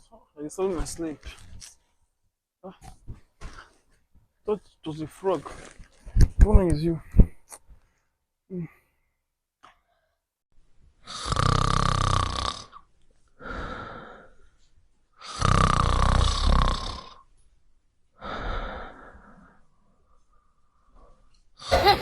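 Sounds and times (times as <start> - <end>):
person snoring loudly: 11.1 - 12.7, 15.3 - 17.1.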